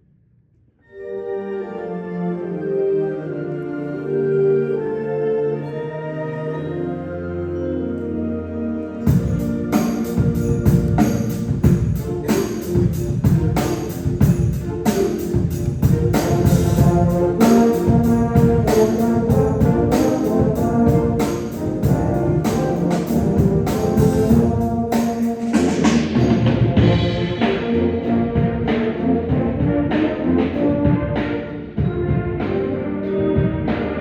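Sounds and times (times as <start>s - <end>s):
concert band playing: 9.0s - 34.0s
percussion strikes: 9.1s - 30.0s.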